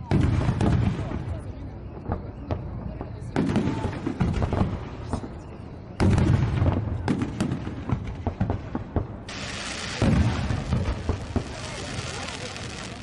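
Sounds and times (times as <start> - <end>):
firework booms: 0.0 - 5.3, 5.9 - 13.0
crackling pops: 9.3 - 13.0
hissing burst: 9.3 - 13.0.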